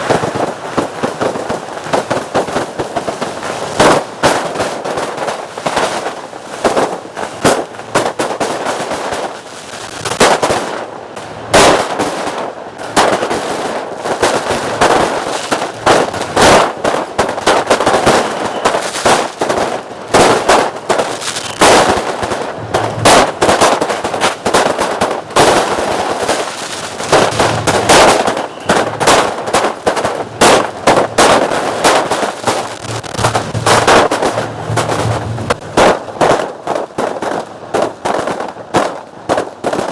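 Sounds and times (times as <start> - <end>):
fireworks bangs and crackles: 0.0 - 39.9.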